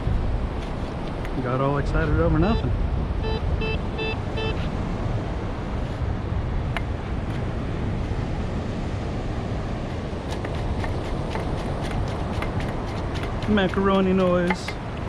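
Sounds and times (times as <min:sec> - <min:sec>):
surf on beach: 0:00.0 - 0:15.0
wind buffeting microphone: 0:00.0 - 0:15.0
metal detector beeps: 0:03.2 - 0:04.7.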